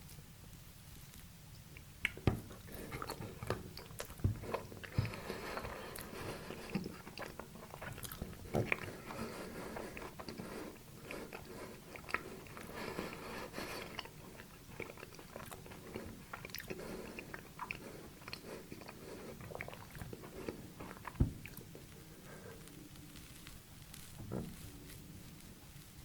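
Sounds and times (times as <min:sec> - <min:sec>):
crunchy chewing: 0:01.0 - 0:26.0
thud: 0:24.2 - 0:24.6.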